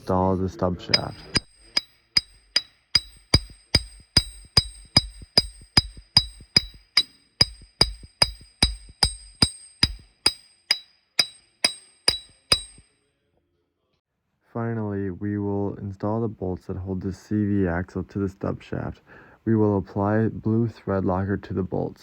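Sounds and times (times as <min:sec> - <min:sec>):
hammer tapping metal: 0:00.9 - 0:12.9.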